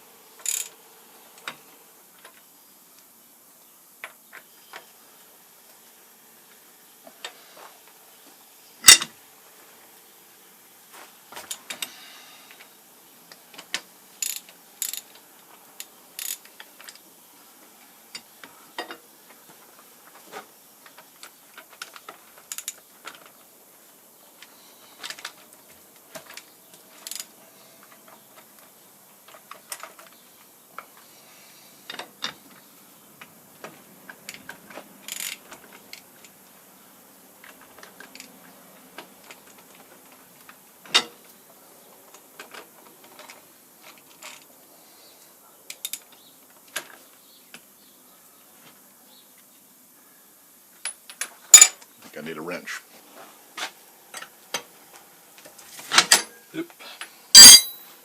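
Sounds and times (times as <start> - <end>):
metallic clicks and clinks: 0.4 - 0.7, 57.4 - 57.9.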